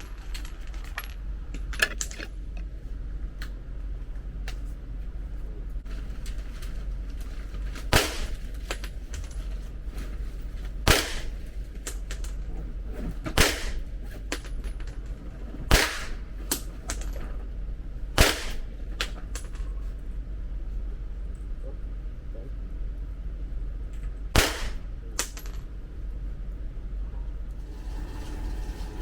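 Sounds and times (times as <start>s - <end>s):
gunshots: 7.9s - 8.5s, 10.9s - 11.4s, 13.4s - 13.9s, 15.7s - 16.2s, 18.2s - 18.7s, 24.4s - 24.8s.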